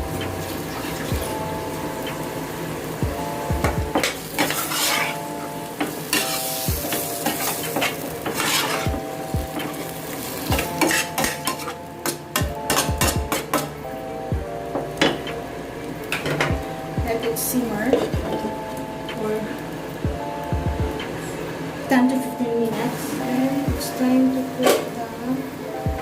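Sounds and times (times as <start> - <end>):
food sizzling in a frying pan: 0.0 - 20.0
metal utensil scraping a pan: 3.9 - 13.7.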